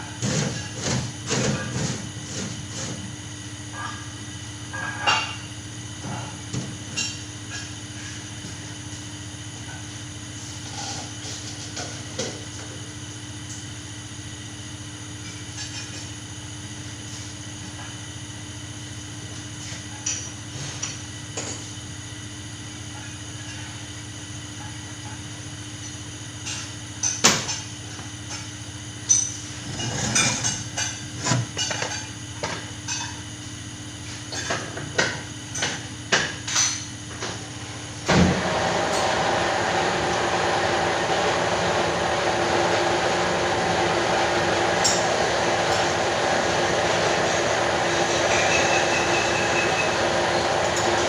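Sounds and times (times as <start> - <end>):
machine running loudly: 37.4 - 51.0.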